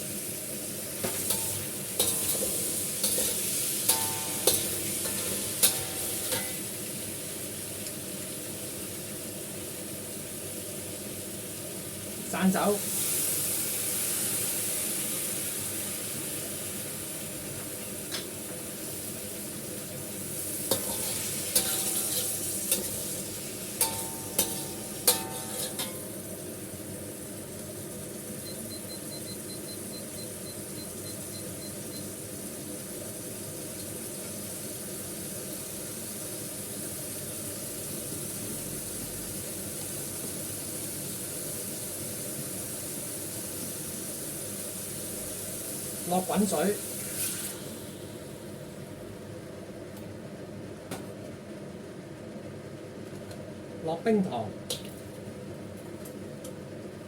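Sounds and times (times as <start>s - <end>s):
meat sizzling in a hot pan: 0.0s - 49.2s
metal spatula knocking a pan: 3.9s - 6.6s, 23.8s - 26.0s.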